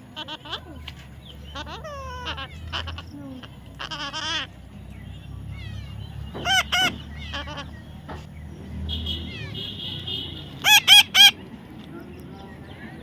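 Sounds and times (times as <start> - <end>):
high parrot call: 0.0 - 4.6, 5.2 - 8.1, 8.9 - 11.4
parrot squawking: 0.1 - 0.8, 1.4 - 4.6, 5.4 - 8.0, 9.0 - 11.4
parrot chirping: 0.1 - 8.0, 8.9 - 11.4.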